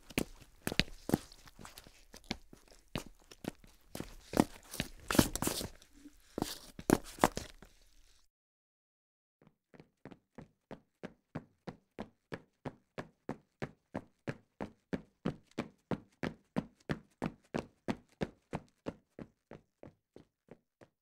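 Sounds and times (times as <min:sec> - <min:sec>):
footsteps: 0:00.0 - 0:08.2.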